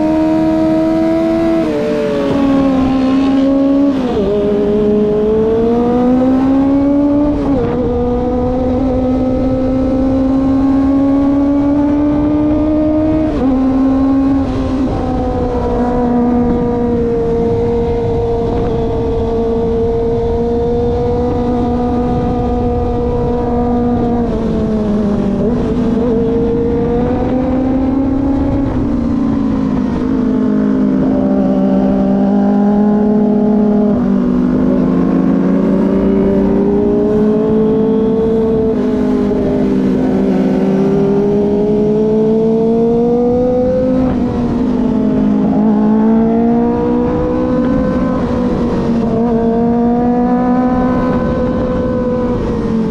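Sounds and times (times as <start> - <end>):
motorcycle engine at high revs: 0.0 - 52.9
wind rushing: 0.0 - 52.9.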